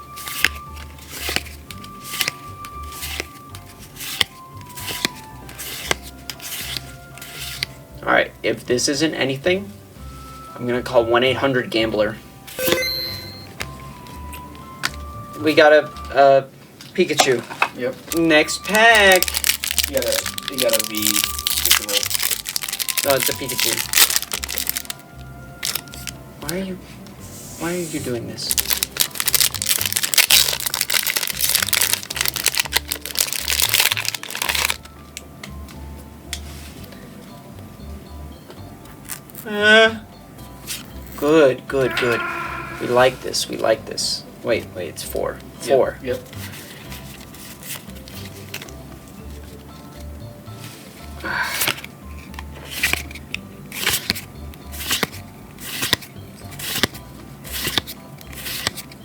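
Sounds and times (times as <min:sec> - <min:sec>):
cards sliding with papery swish: 0:00.2 - 0:07.8, 0:27.2 - 0:28.2, 0:52.6 - 0:58.8
foil wrapper crinkling: 0:18.1 - 0:26.2, 0:28.5 - 0:34.9.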